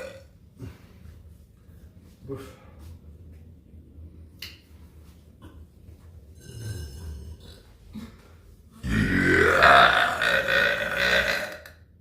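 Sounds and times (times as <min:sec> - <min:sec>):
man burping: 0:00.0 - 0:00.3, 0:06.4 - 0:07.6, 0:08.8 - 0:11.8.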